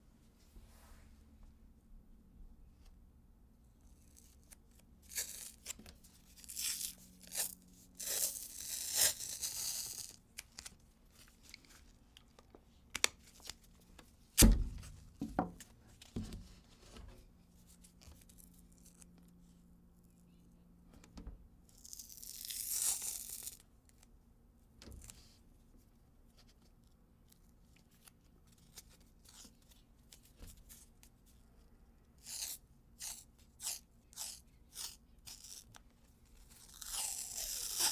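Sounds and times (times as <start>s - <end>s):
tape ripping: 5.1s - 10.7s, 21.9s - 23.6s, 36.6s - 37.9s.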